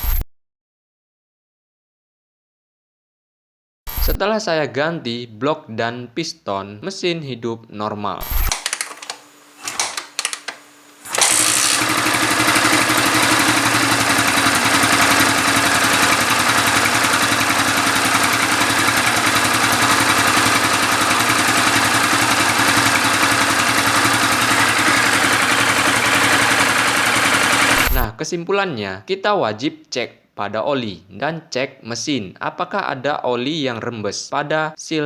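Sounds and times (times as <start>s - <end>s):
motorcycle engine starting and idling: 8.5s - 28.1s.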